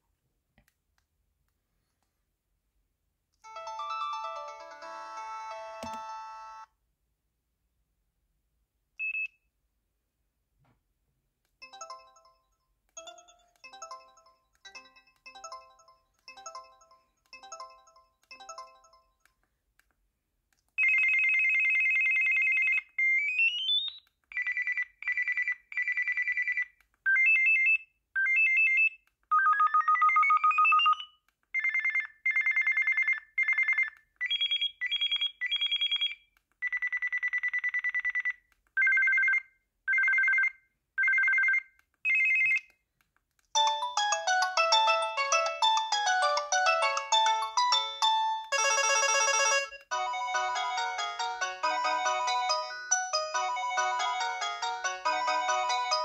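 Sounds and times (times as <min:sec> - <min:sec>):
buzzy electronic ringtone: 0:03.5 - 0:06.7, 0:43.7 - 0:56.0
chime-like ringtone melody: 0:03.5 - 0:06.7, 0:11.6 - 0:19.2, 0:43.6 - 0:56.0.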